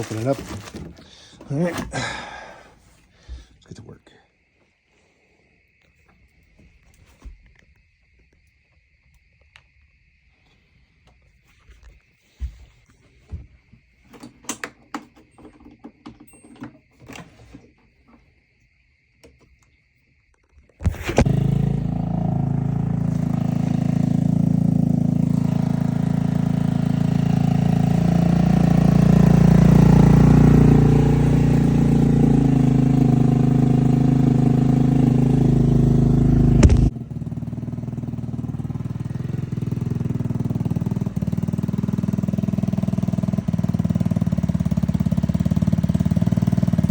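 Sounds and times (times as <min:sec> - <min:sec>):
scooter engine running: 0:00.0 - 0:02.5, 0:20.9 - 0:46.9.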